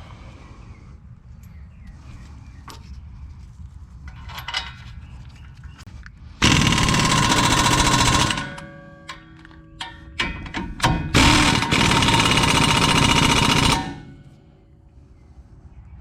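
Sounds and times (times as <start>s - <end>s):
clicks and knocks of parts handled: 4.0s - 6.2s, 8.6s - 11.1s
impact wrench hammering: 6.4s - 14.4s.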